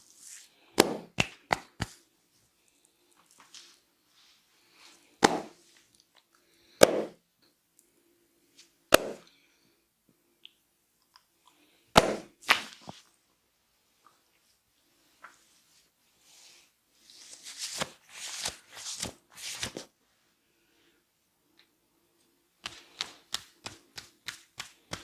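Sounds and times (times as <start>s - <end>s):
hands slapping head: 0.8s - 2.0s, 5.2s - 5.6s, 6.8s - 7.2s, 9.0s - 9.3s, 12.0s - 13.0s, 22.6s - 25.0s.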